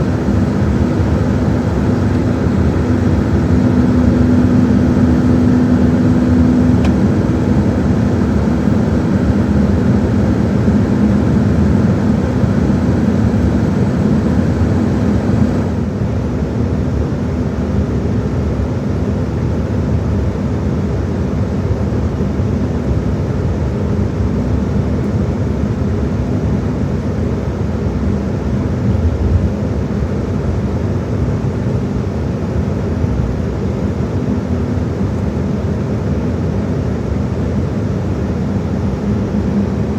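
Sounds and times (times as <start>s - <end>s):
low hum: 0.0s - 15.8s
aircraft cabin engine and air rush: 0.0s - 39.9s.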